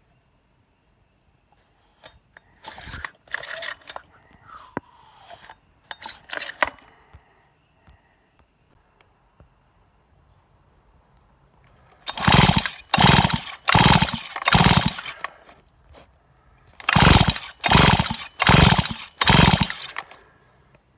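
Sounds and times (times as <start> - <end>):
chainsaw engine cranking: 2.6 - 4.0, 12.0 - 15.6, 16.8 - 20.3.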